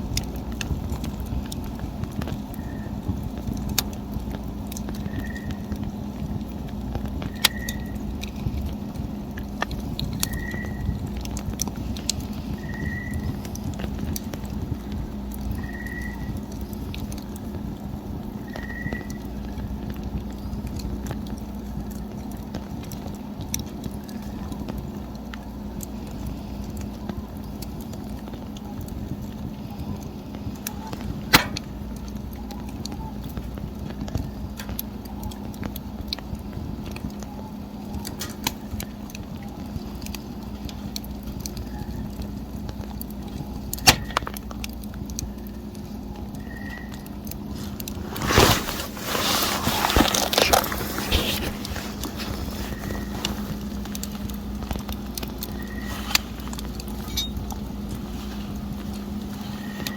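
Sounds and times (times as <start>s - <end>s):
campfire burning: 0.0s - 59.9s
small crackles: 0.0s - 59.9s
sharp loud pops: 31.3s - 31.8s.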